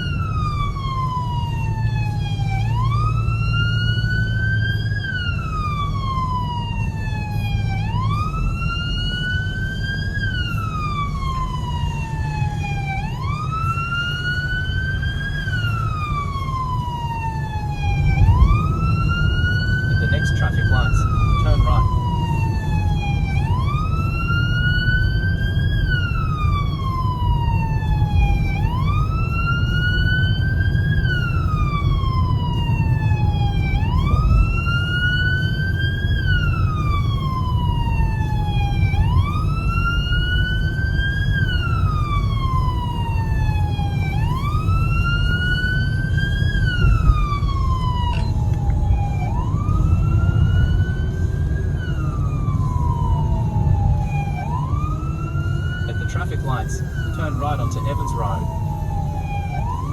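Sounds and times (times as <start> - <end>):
engine and road rumble: 0.0 - 59.9
siren wailing: 0.0 - 59.9.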